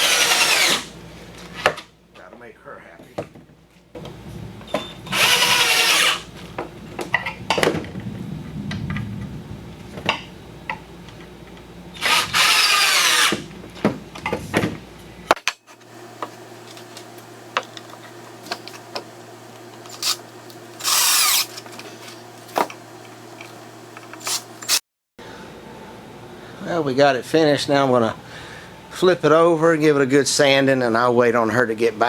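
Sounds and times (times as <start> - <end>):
power drill driving screws into wood: 0.0 - 0.9, 5.1 - 6.3, 12.0 - 13.5, 19.9 - 20.2, 20.8 - 21.7, 24.2 - 24.8.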